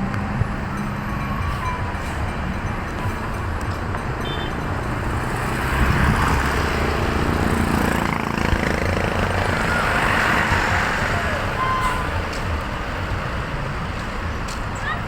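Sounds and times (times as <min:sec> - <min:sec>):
road noise: 0:00.0 - 0:15.0
vehicle engines in traffic: 0:00.0 - 0:15.0.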